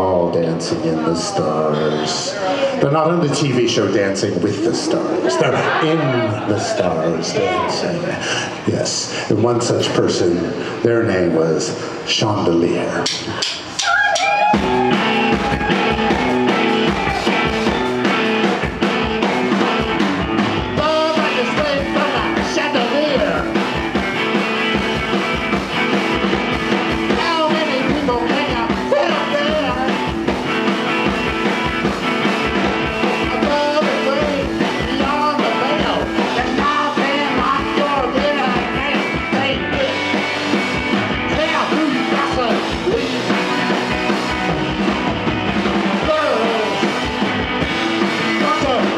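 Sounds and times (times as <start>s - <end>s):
steady drumbeat: 13.0s - 48.9s
rock band playing live: 13.1s - 48.9s
person singing: 20.8s - 23.6s, 27.1s - 30.2s, 33.0s - 40.3s, 41.3s - 44.6s, 46.0s - 47.1s.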